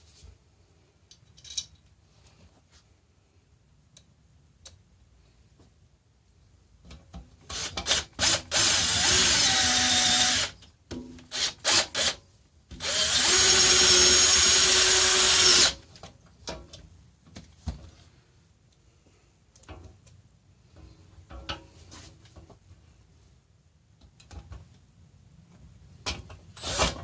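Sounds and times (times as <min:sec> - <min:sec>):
power drill driving bolts: 0:07.5 - 0:10.6, 0:11.3 - 0:12.2, 0:12.8 - 0:15.8, 0:26.6 - 0:27.0.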